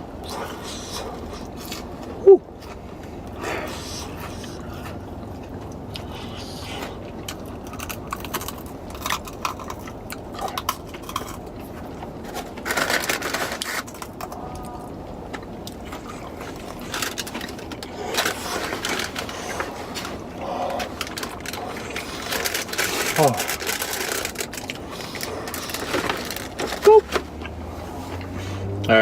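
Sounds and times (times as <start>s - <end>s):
low rumble in car cabin: 0.0s - 29.0s
food packaging rustling: 7.2s - 14.6s, 15.4s - 28.1s.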